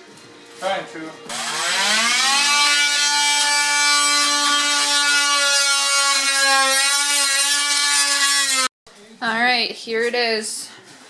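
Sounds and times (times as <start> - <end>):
small electric motor whining: 1.3 - 8.7.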